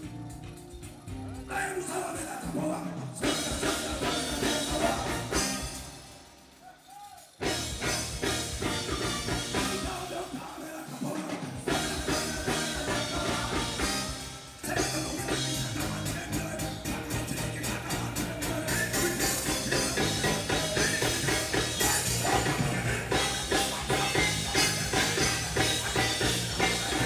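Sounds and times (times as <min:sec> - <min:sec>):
live band music with drum kit: 0:00.0 - 0:27.0.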